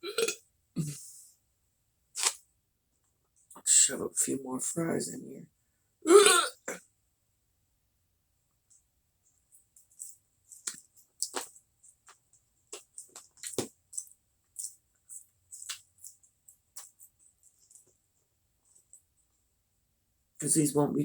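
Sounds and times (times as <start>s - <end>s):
chewing french fries: 2.2s - 2.4s, 9.5s - 19.2s.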